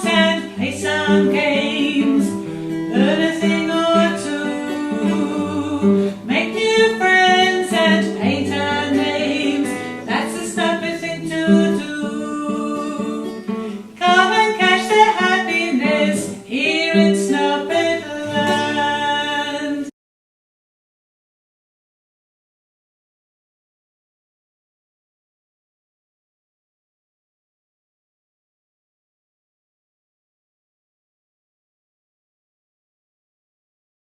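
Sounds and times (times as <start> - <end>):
strummed acoustic guitar: 0.0 - 19.9
person singing: 0.0 - 20.0.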